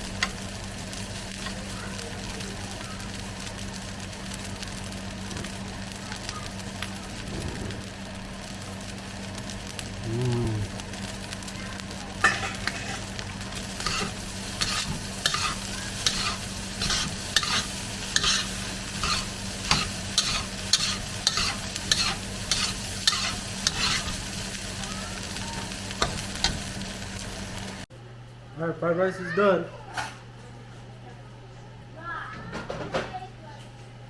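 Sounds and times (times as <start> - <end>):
rice sizzling in a hot pan: 0.0 - 27.9
spatula scraping a pan: 12.2 - 24.4.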